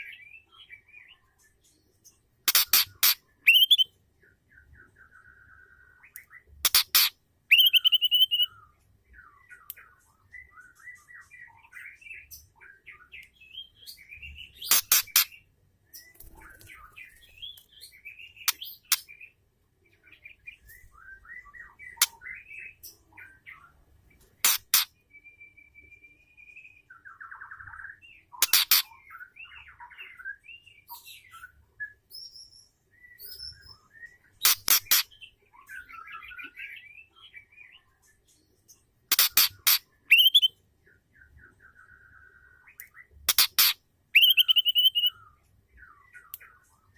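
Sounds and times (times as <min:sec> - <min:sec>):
bird whistling and warbling: 0:02.5 - 0:03.9, 0:06.6 - 0:08.6, 0:39.1 - 0:40.6, 0:43.3 - 0:45.3.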